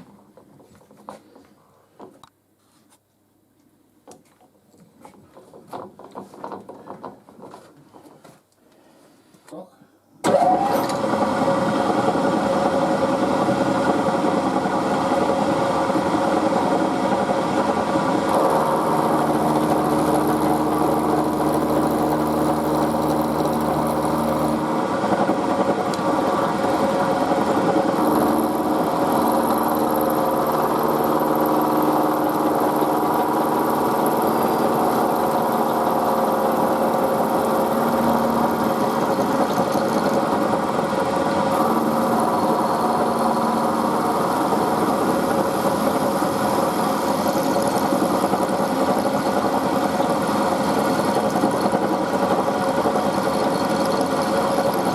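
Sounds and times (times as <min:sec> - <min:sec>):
milling machine cutting steel: 0:18.2 - 0:54.9.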